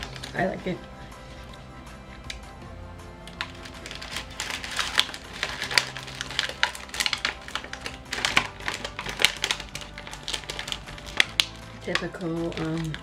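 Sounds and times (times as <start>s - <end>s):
cookie crunching while chewed: 0.0s - 2.6s, 3.2s - 13.0s.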